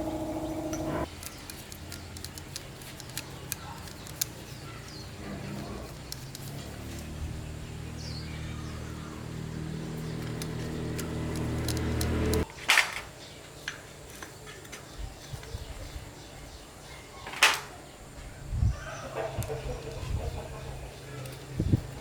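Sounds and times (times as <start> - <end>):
motor humming: 0.0 - 1.1, 9.3 - 12.4.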